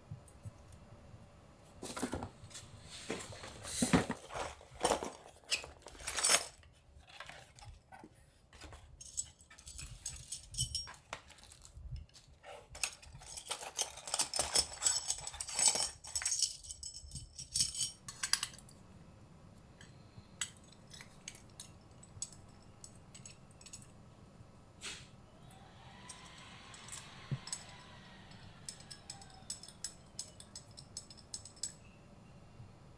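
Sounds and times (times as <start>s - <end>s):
small hard objects clinking and clicking: 28.6s - 31.9s.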